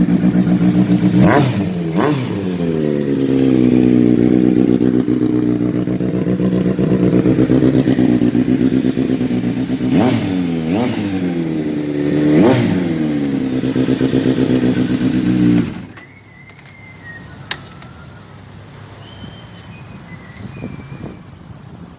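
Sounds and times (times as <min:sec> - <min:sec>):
motorcycle engine idling and revving: 0:00.0 - 0:21.9
single click: 0:17.5 - 0:17.9.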